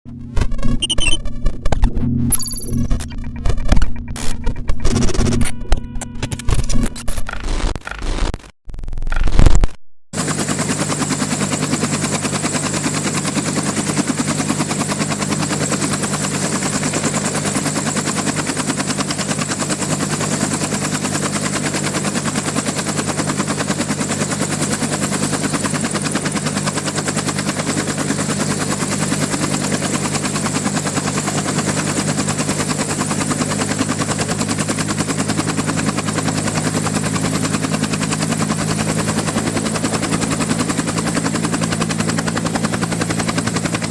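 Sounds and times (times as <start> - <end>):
rapid pulsing electrical buzz: 0.1 - 9.6.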